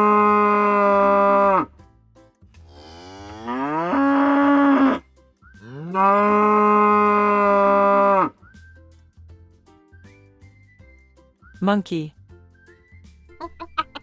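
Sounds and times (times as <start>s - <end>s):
cow mooing: 0.0s - 1.7s, 2.7s - 5.0s, 5.6s - 8.3s.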